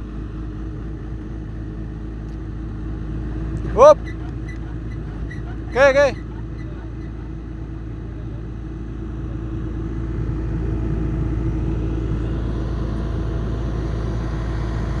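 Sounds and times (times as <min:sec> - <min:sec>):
drilling rig engine running: 0:00.0 - 0:15.0.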